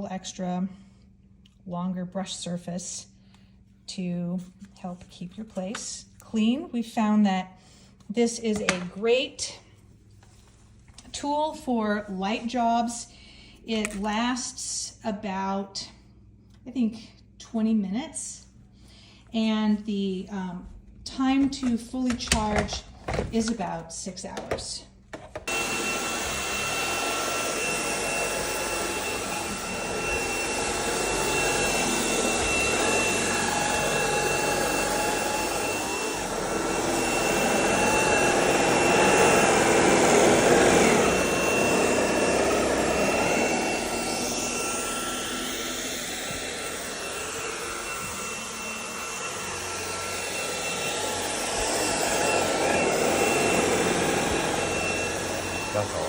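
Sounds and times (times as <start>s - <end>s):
vacuum cleaner motor whine: 25.2s - 56.0s.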